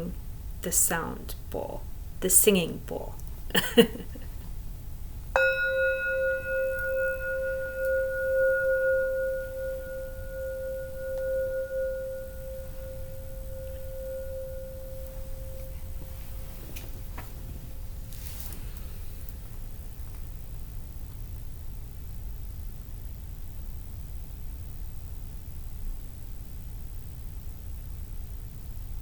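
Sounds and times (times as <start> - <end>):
singing bowl ringing: 5.4 - 18.1.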